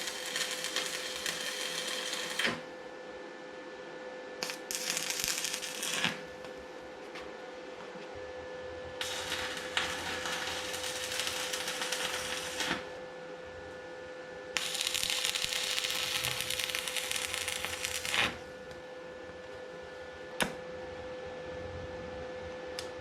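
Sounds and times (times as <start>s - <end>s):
crackling welding arc: 0.0s - 2.6s, 4.4s - 6.3s, 9.0s - 13.0s, 14.6s - 18.4s
steady hum: 0.0s - 23.0s.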